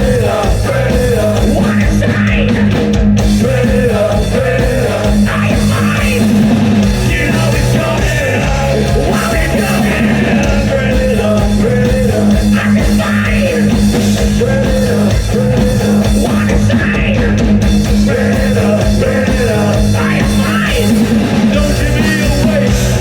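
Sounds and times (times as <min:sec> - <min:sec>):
rock band playing loud: 0:00.0 - 0:23.0
wavering lead guitar line: 0:00.0 - 0:23.0.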